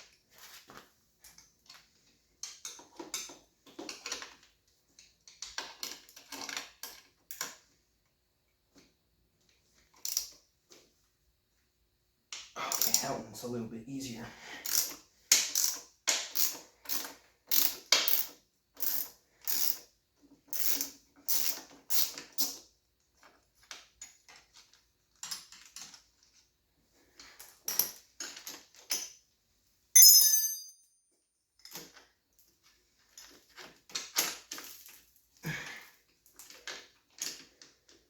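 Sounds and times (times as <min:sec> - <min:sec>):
ringing metal clink: 0:30.0 - 0:31.0.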